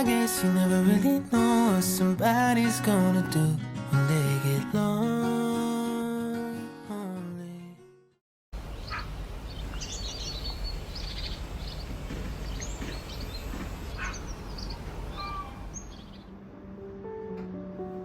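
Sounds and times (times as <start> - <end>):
birds chirping: 8.6 - 16.3
low outdoor rumble: 8.6 - 16.5.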